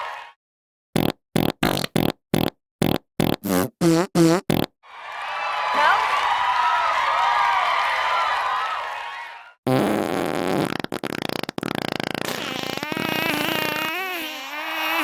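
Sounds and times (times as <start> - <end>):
wet fart sound effect: 1.0 - 4.8, 9.7 - 15.0.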